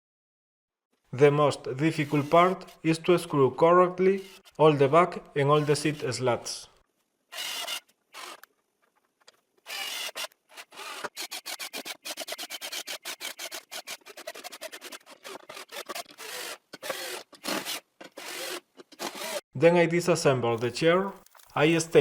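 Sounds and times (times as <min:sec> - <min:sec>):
wood being scraped by hand: 0:01.7 - 0:02.9, 0:09.7 - 0:19.4.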